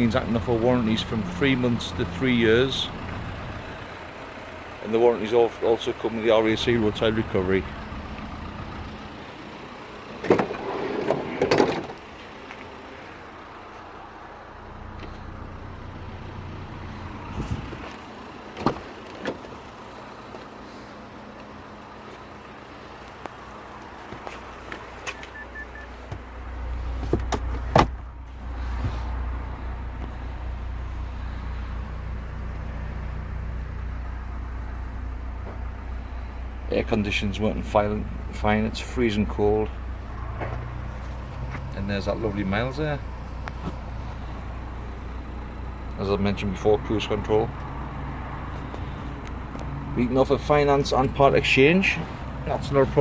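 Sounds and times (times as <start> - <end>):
diesel engine idling: 0.0 - 53.0
van door clunk: 10.2 - 12.0, 17.6 - 19.6, 27.0 - 28.1.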